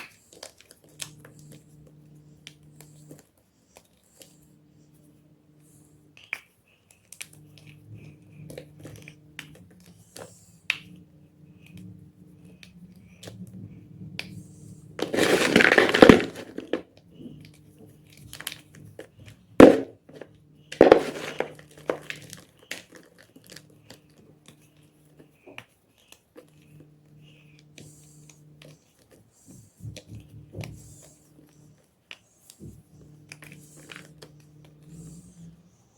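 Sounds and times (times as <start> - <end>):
chalk crunching and crackling: 15.0 - 16.8, 19.6 - 24.0.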